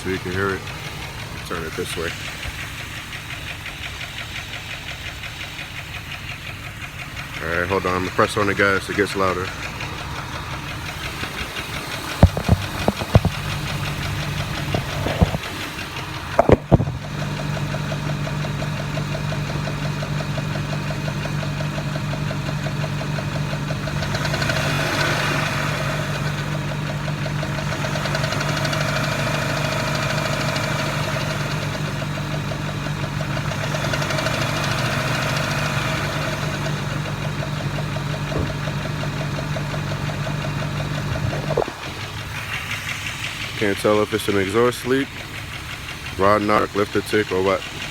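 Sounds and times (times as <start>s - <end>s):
engine revving with ticking: 0.0s - 47.9s
sharp knocks: 12.0s - 15.6s, 16.3s - 17.2s, 38.3s - 38.9s.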